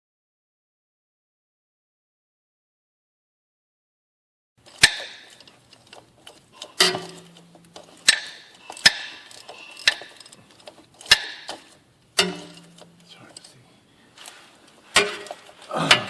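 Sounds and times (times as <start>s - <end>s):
hand tools clinking on metal: 4.7s - 13.6s, 14.2s - 16.0s.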